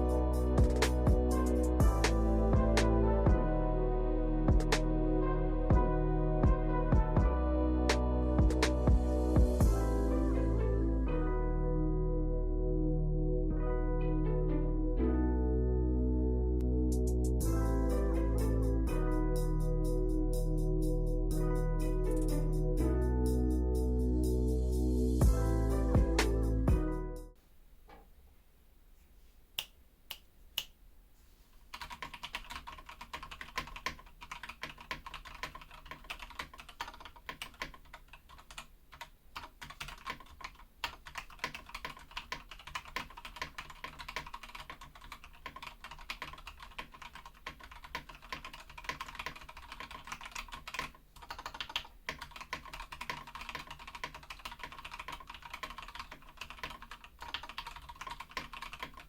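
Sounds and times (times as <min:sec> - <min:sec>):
mechanical keyboard typing: 0:31.7 - 0:59.0.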